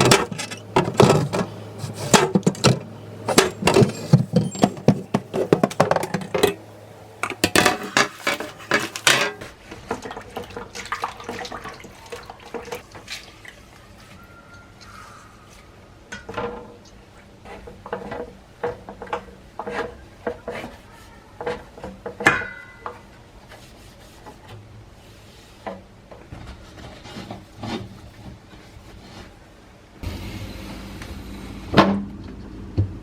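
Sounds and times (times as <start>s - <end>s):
dishes knocking and clinking: 0.0s - 6.6s, 7.2s - 9.4s.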